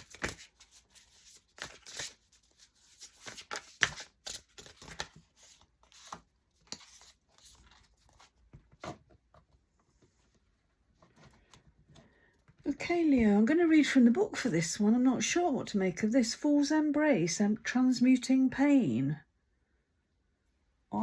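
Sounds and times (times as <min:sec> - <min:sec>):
cards being shuffled: 0:00.0 - 0:09.4.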